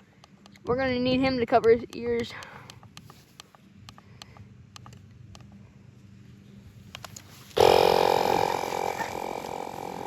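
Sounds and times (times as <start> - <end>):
air compressor humming and hissing: 7.5 - 10.0.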